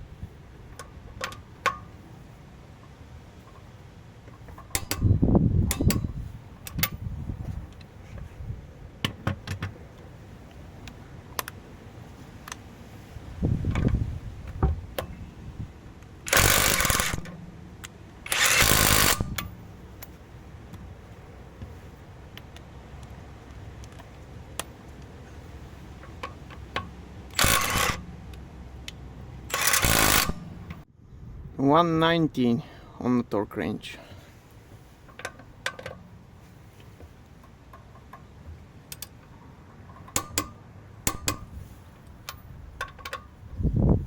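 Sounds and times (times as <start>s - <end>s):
clicks and clanks: 0.7s - 1.9s, 4.3s - 7.0s, 38.9s - 43.3s
impact wrench hammering: 16.3s - 17.4s, 29.5s - 30.8s, 40.1s - 41.5s.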